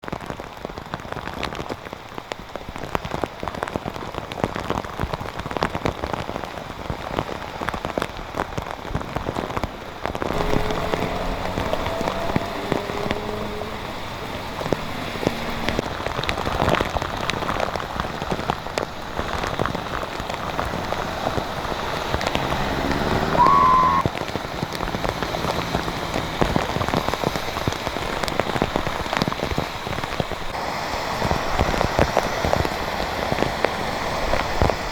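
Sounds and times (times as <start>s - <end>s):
heavy rain on hard surfaces: 0.0s - 34.9s
brief pitched sounds: 22.9s - 24.1s.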